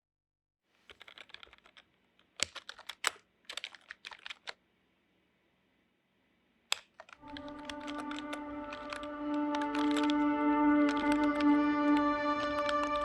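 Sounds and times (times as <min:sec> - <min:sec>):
typing on a keyboard: 0:00.9 - 0:04.6, 0:06.7 - 0:13.0.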